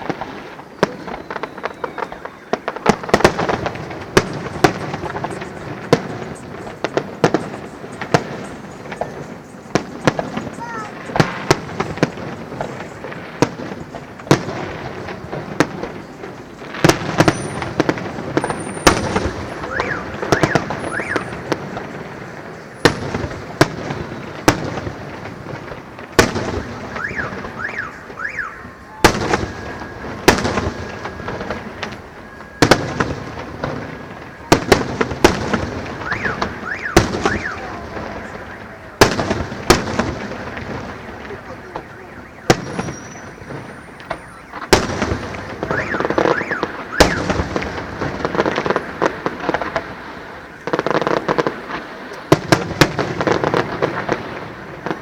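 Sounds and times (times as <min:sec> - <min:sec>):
fireworks bursting: 0:00.0 - 0:55.0.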